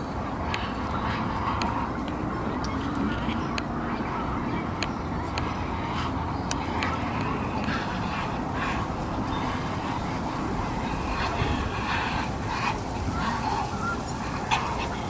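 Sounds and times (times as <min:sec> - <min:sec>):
distant traffic rumble: 0:00.0 - 0:15.0
ducks quacking softly: 0:00.0 - 0:15.0.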